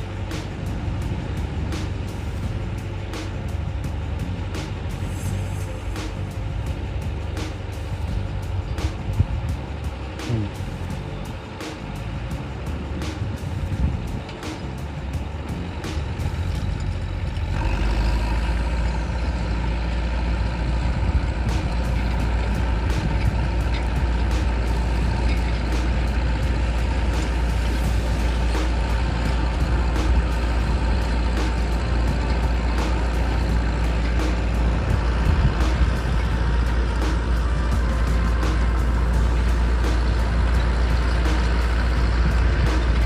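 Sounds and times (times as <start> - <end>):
diesel engine rumbling: 0.0 - 43.0.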